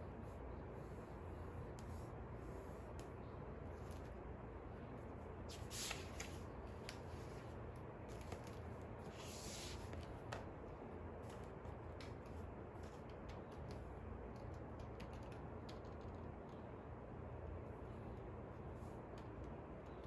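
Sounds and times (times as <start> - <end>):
steady low hum: 0.0 - 20.0
paper rustle: 5.5 - 10.2.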